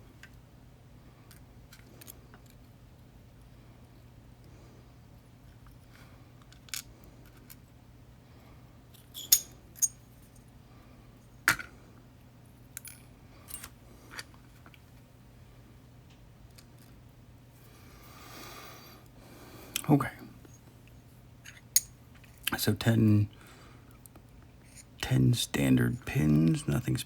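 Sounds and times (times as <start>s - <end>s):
small metal parts clicking: 9.0s - 10.0s.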